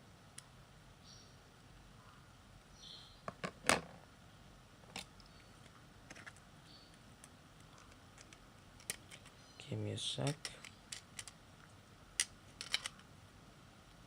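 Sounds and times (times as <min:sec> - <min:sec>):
plastic bricks clicking together: 0:07.2 - 0:09.3, 0:10.3 - 0:11.4, 0:12.2 - 0:13.1.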